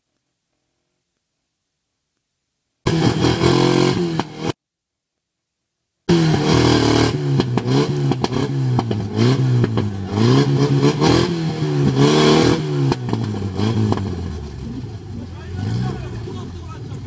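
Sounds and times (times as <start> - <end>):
off-road vehicle engine revving: 2.9 - 4.6, 6.1 - 17.0
vehicle clatter over rough ground: 6.8 - 17.0.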